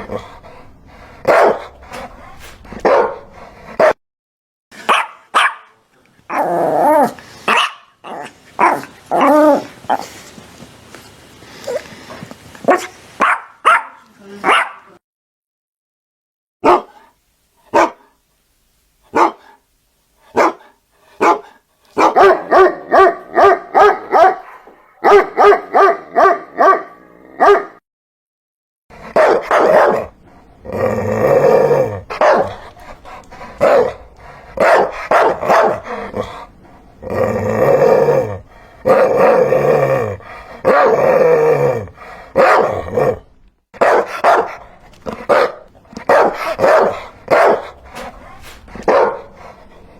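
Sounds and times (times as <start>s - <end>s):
dogs barking: 1.2s - 4.0s, 4.8s - 5.8s, 7.5s - 7.9s, 12.7s - 14.9s, 16.6s - 17.1s, 17.7s - 18.1s, 19.1s - 19.6s, 20.4s - 27.8s, 29.0s - 30.2s, 32.1s - 32.9s, 33.6s - 36.4s, 42.4s - 43.1s, 43.8s - 49.6s.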